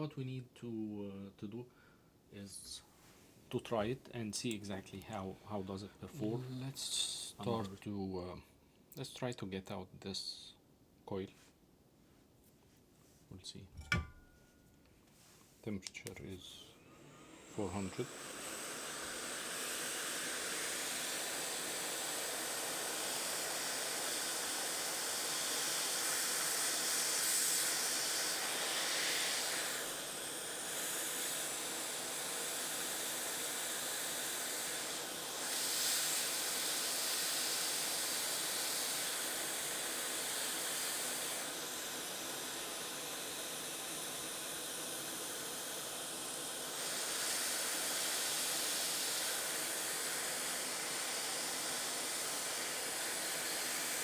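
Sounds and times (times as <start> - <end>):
hot air gun hissing: 16.4 - 54.0.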